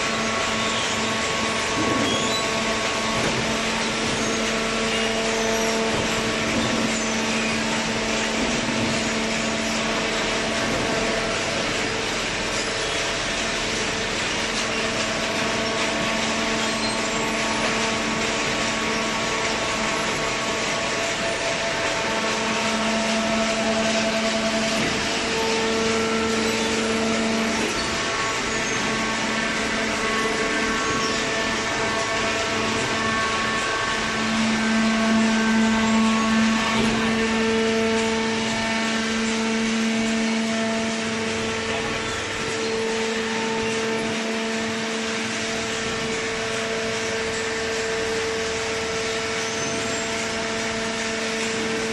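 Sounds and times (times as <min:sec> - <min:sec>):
baler motor and pump running: 0:00.0 - 0:51.9.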